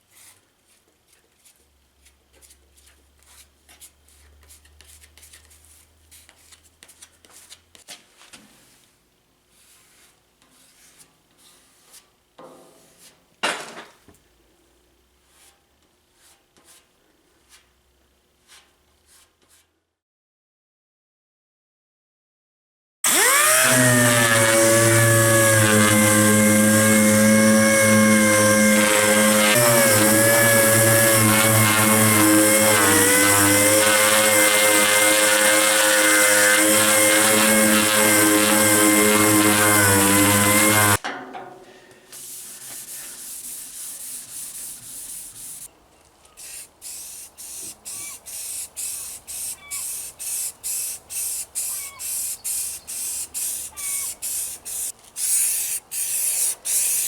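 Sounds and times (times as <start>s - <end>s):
power tool motor running: 23.1s - 41.0s, 47.6s - 57.0s
short hissing spray bursts: 42.2s - 45.7s, 46.4s - 57.0s.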